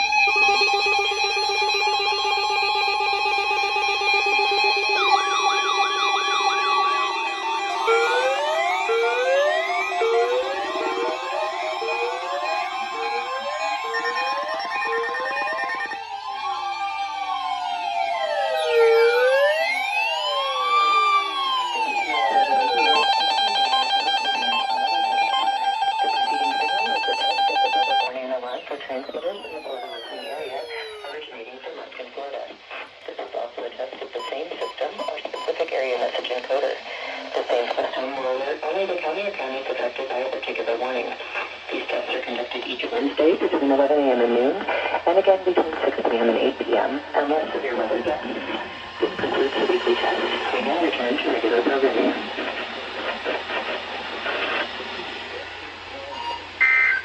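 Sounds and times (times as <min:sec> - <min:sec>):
steady buzzing alarm tone: 0:00.0 - 0:31.2
warbling siren: 0:00.0 - 0:31.6, 0:34.1 - 0:35.8, 0:45.6 - 0:57.0.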